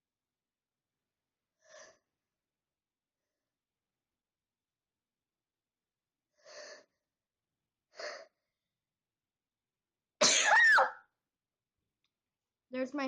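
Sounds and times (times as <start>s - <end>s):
person breathing in: 6.3s - 7.0s
person sneezing: 10.2s - 10.9s.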